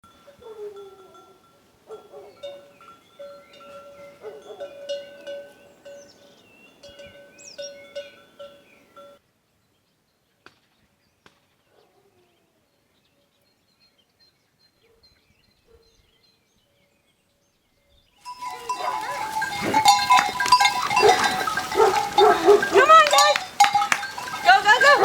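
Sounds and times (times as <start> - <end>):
livestock bells clanking: 0.0 - 9.2, 18.2 - 25.0
livestock bleating: 18.3 - 25.0.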